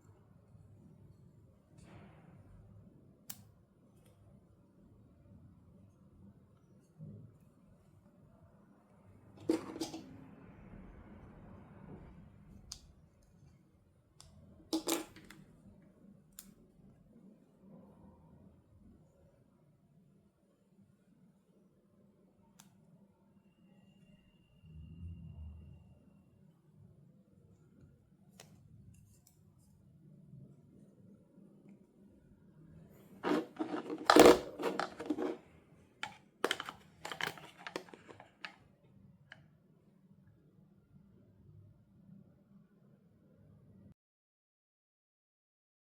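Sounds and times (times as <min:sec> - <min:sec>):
toys and packaging clicking: 0:14.8 - 0:15.4, 0:33.2 - 0:35.4, 0:36.0 - 0:38.6.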